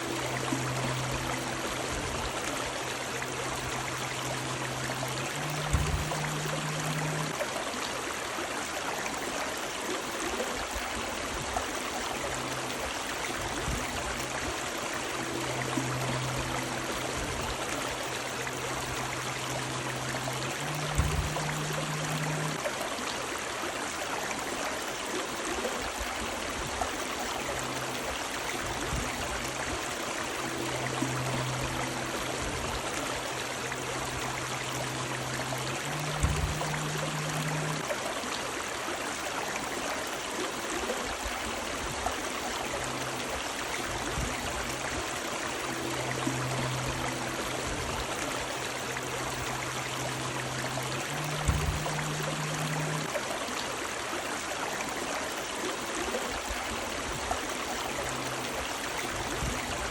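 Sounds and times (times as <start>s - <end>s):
river water rushing over rocks: 0.0s - 59.9s
short low thud with hum: 5.4s - 7.3s, 20.6s - 22.6s, 35.9s - 37.8s, 51.2s - 53.0s.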